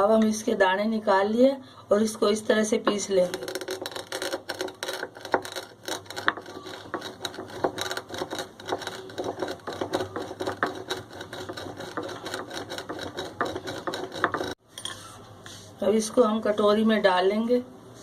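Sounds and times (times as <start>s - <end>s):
seeds being ground by hand: 3.2s - 14.6s.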